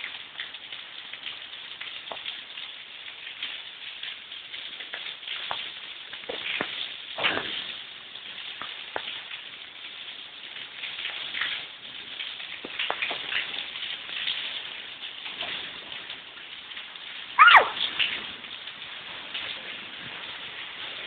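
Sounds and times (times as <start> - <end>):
steady rain: 0.0 - 21.0
loud cry bending in pitch: 17.4 - 17.8.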